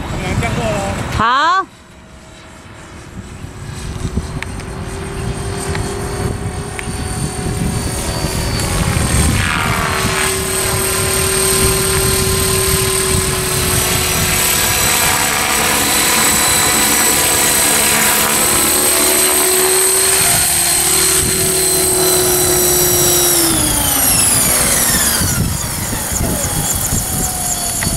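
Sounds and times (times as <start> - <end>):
model helicopter whine: 0.0 - 27.9.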